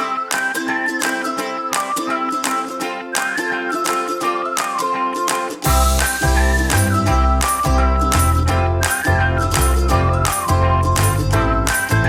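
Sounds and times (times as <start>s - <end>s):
upbeat instrumental music: 0.0s - 12.0s.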